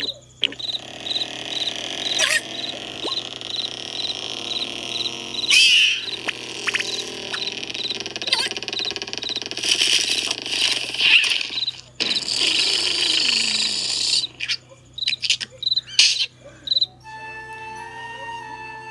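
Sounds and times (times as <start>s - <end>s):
cartoon snoring: 0.0s - 14.5s
crickets chirping: 0.0s - 17.2s
short snorts: 12.0s - 14.2s.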